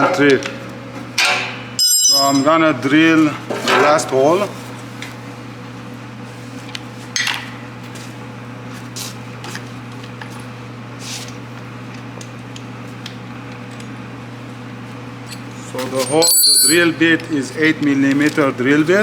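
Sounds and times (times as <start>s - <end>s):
metal tools clinking and knocking: 1.8s - 2.5s.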